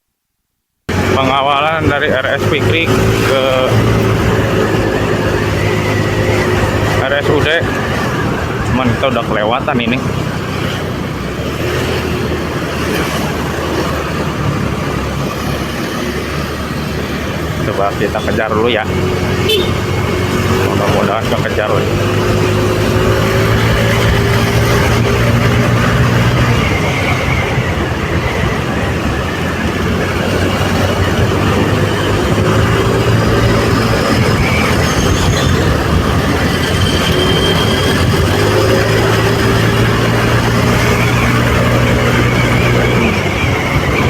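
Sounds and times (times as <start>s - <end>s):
road noise: 0.9s - 44.0s
vehicle engine running: 0.9s - 44.0s
wind noise: 21.8s - 44.0s.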